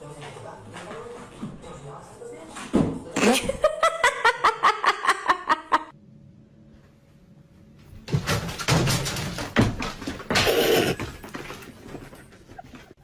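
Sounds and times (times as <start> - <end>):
person laughing: 3.2 - 5.9.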